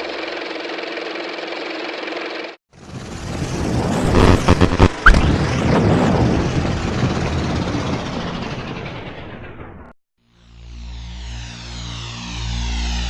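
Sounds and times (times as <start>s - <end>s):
deep rumble: 3.0s - 9.9s
steady hum: 4.0s - 5.1s.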